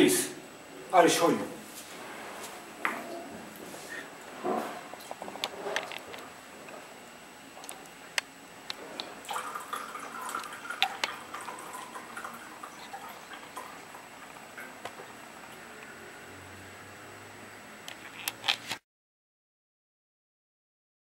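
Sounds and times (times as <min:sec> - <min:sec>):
liquid dripping and trickling: 0:09.2 - 0:15.6.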